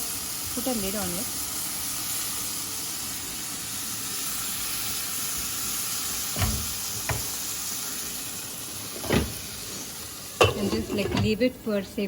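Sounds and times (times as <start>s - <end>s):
food sizzling in oil: 0.0s - 12.0s
lid knocking on pot: 6.4s - 7.4s, 10.4s - 11.4s.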